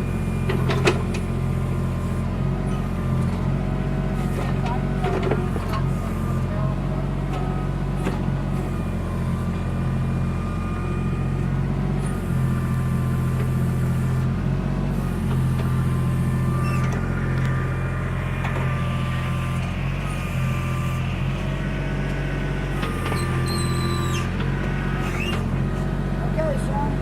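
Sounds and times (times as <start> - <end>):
backhoe engine running: 0.0 - 27.0.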